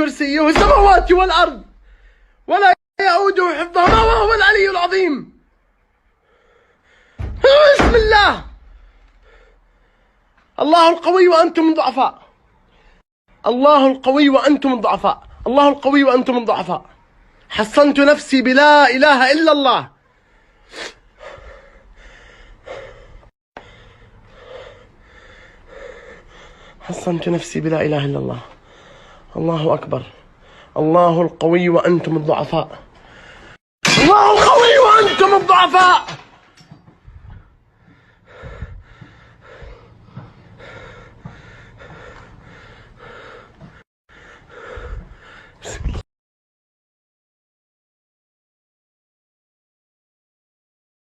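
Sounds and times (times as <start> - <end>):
man breathing: 1.7 - 2.5, 5.8 - 7.4, 8.6 - 10.6, 12.3 - 13.0, 20.0 - 26.9, 28.5 - 29.4, 30.1 - 30.8, 32.9 - 33.6, 36.9 - 46.0
sharp gasp: 1.8 - 2.4.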